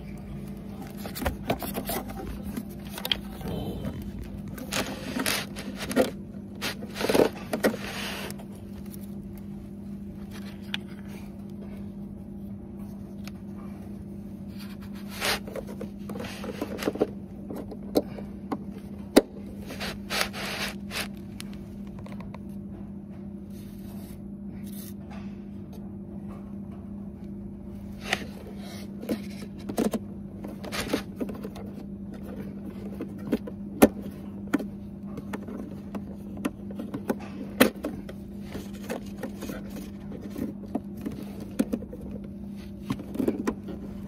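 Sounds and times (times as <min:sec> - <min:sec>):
steady low hum: 0:00.0 - 0:44.0.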